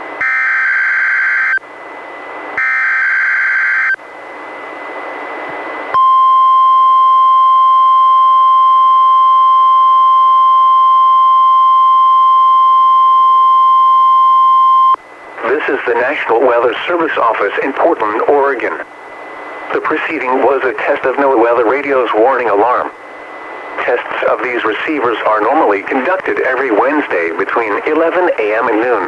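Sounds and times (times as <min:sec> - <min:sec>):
warning alarm tone: 0:00.2 - 0:01.6, 0:02.6 - 0:04.0, 0:06.0 - 0:15.0
radio hiss: 0:15.0 - 0:29.0.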